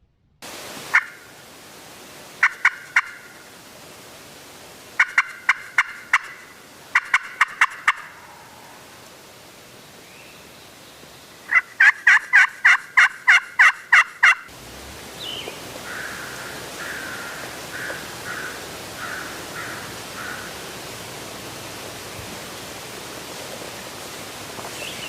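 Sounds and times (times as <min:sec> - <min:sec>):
turkey call yelping: 0:00.9 - 0:01.2, 0:02.4 - 0:03.3, 0:05.0 - 0:08.6, 0:11.5 - 0:14.5, 0:15.8 - 0:20.5.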